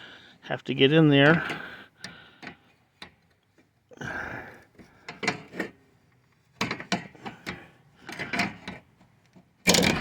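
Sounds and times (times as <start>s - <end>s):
crowbar scraping metal: 9.6s - 10.0s.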